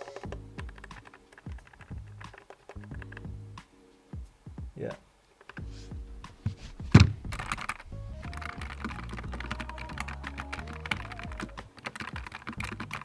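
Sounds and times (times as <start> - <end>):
key thump: 6.8 - 7.8.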